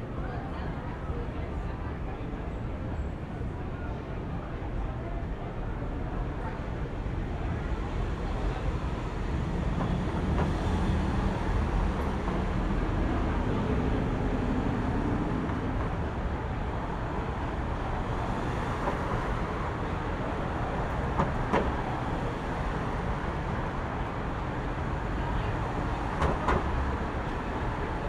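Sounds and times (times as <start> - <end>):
passing vehicles rumble: 7.7 - 28.0.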